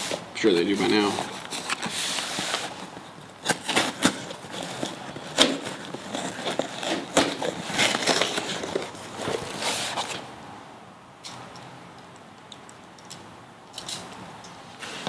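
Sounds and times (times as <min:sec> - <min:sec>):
packing material crinkling: 0:00.0 - 0:10.3.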